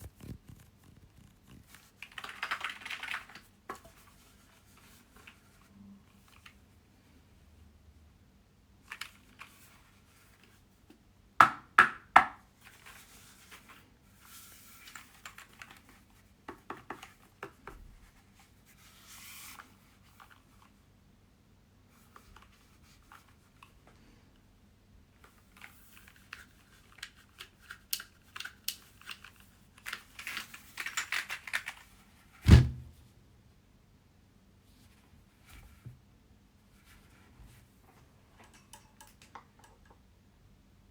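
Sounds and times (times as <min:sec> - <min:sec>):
heavy thump: 0:32.4 - 0:33.0.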